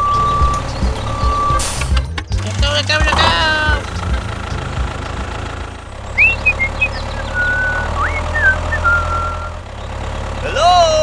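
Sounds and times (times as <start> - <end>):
gliding whistle-like tones: 0.0 - 1.8, 6.1 - 9.6
low motor hum: 0.0 - 11.0.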